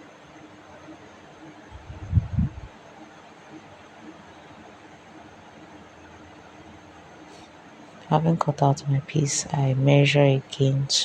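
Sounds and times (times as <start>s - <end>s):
low hum: 1.7s - 2.8s.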